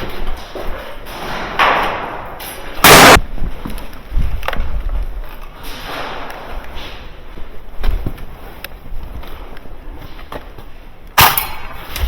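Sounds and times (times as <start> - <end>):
loud sharp bang: 2.8 - 3.2.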